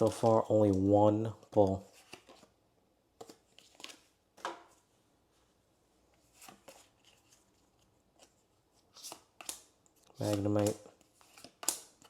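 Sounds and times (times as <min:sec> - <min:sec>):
cards sliding swishes: 0:08.9 - 0:12.0.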